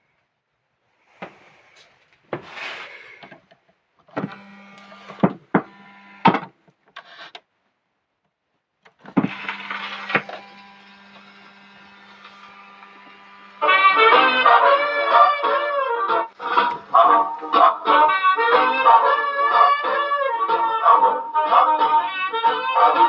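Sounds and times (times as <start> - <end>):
equipment knocks and clicks: 4.1 - 4.4, 5.1 - 6.6, 9.0 - 10.5
steady electrical hum: 9.1 - 17.8.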